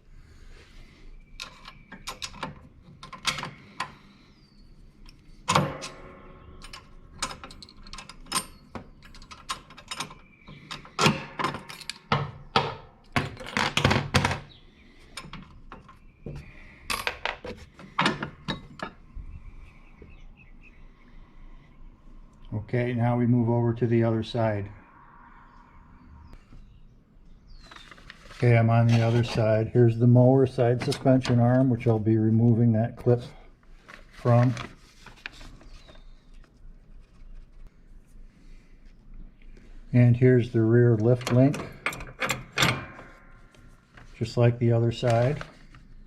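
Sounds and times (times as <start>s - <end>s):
metal clanks and knocks: 5.5s - 14.4s.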